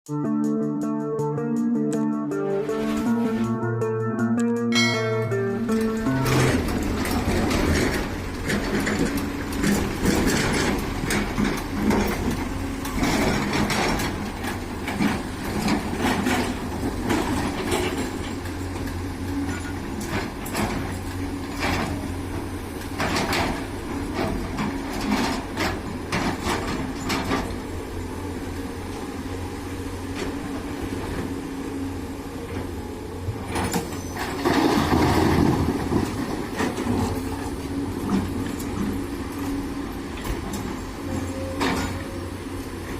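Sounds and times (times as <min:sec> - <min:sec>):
excavator diesel engine running: 0:01.6 - 0:42.9
rocks knocking and scraping metal: 0:05.7 - 0:27.6, 0:33.3 - 0:39.3.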